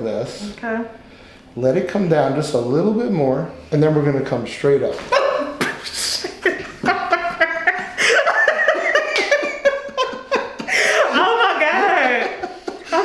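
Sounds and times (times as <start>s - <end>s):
woman laughing: 5.1s - 13.0s
woman exclaiming: 11.0s - 12.4s.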